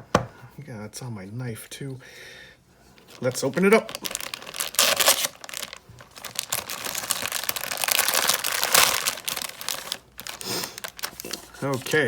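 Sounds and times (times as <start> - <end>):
packaging being torn and crinkled: 3.1 - 12.0.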